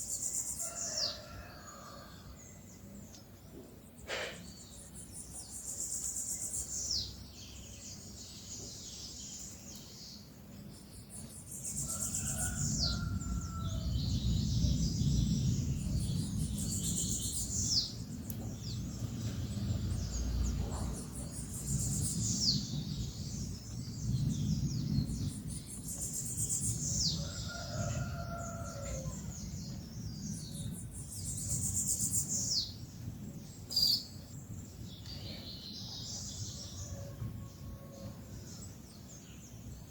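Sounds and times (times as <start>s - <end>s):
songbird singing: 0.0s - 39.9s
low background rumble: 12.0s - 27.5s.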